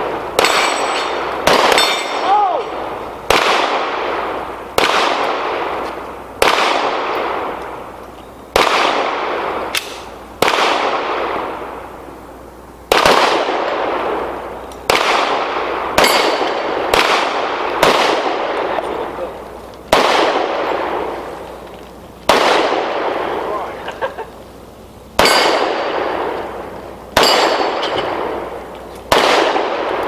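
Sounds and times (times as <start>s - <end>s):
handgun shots with echo: 0.4s - 2.4s, 9.7s - 11.0s, 16.0s - 18.6s, 25.2s - 26.1s, 27.2s - 28.4s, 29.1s - 30.0s.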